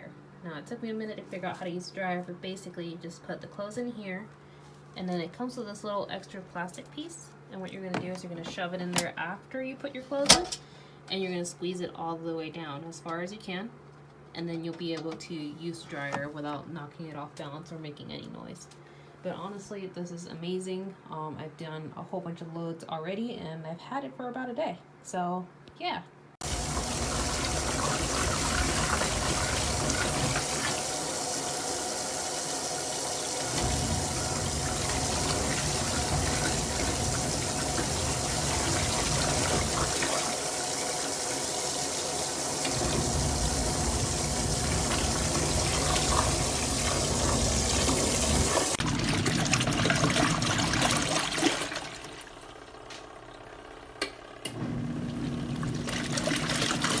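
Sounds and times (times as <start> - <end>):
water running and splashing: 26.4 - 52.6, 55.2 - 57.0.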